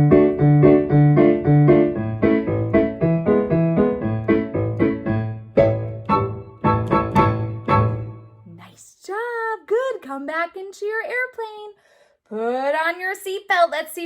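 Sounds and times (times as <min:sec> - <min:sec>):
keyboard chords: 0:00.0 - 0:08.4
repeating bass line: 0:00.0 - 0:08.4.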